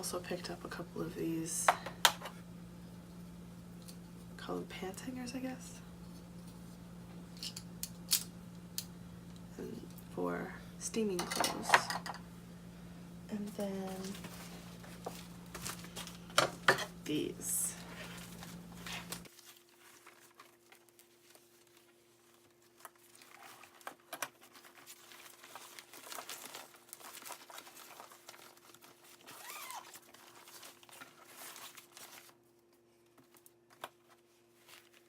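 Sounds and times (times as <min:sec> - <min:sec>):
fabric bag and packaging rustling: 0:13.4 - 0:16.4, 0:17.6 - 0:35.0.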